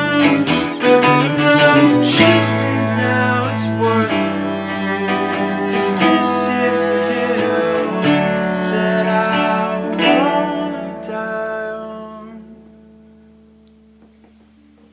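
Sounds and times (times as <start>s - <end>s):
acoustic guitar strumming: 0.0s - 14.9s.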